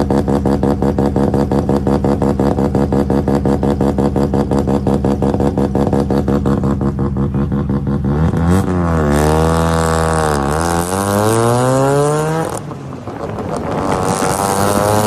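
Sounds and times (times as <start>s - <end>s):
car engine idling: 0.0s - 8.6s.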